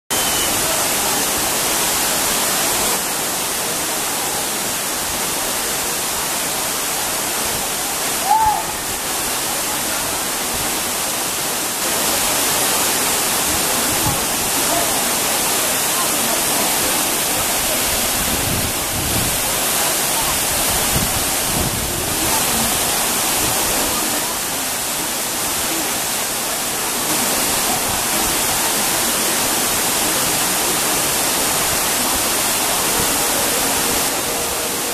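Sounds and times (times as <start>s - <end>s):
waterfall rushing hiss: 0.1s - 34.9s.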